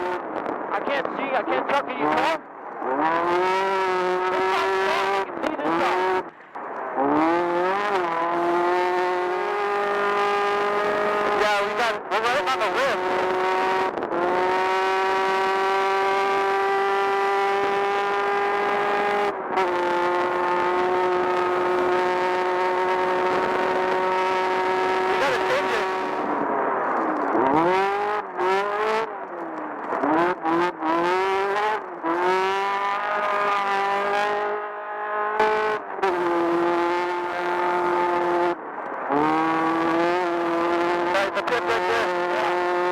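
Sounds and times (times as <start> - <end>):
race buggy engine revving: 0.0 - 42.9.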